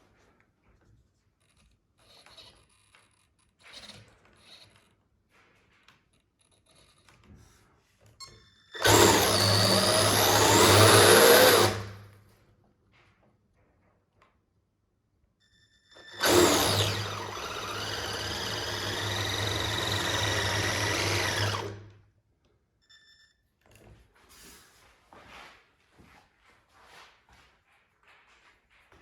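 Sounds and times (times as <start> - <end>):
electric motor whine: 8.8 - 12.0, 16.0 - 21.9.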